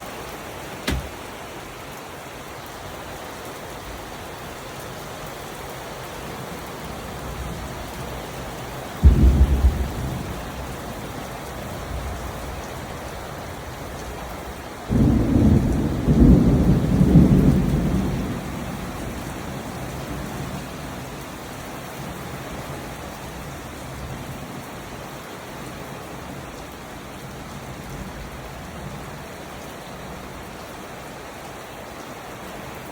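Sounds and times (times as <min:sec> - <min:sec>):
steady rain: 0:00.0 - 0:32.9
thunder rumbling: 0:09.0 - 0:11.3, 0:14.9 - 0:19.6.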